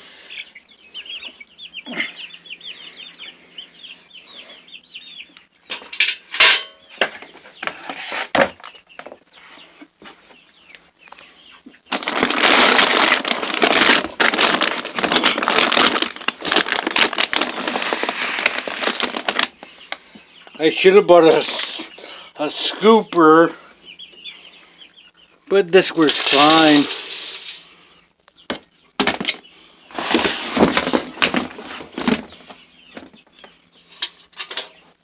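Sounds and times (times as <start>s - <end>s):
young chickens peeping: 0.0s - 12.0s, 14.5s - 30.4s, 31.0s - 35.0s
dry chicken feed pouring: 11.9s - 19.5s, 21.2s - 21.9s, 25.8s - 27.8s.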